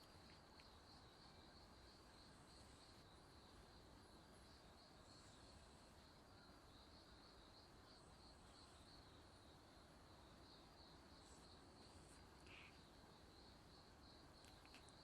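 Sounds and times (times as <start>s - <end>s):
high-pitched insect trill: 10.5s - 15.0s.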